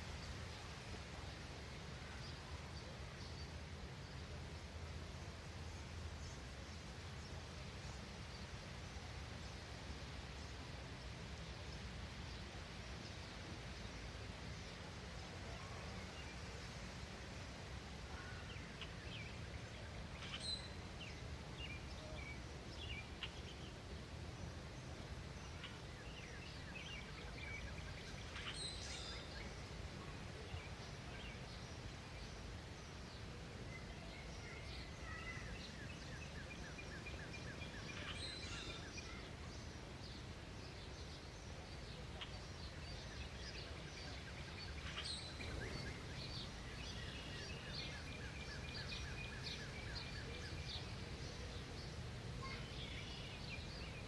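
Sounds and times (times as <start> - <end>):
birds chirping and calling: 44.3 - 54.0.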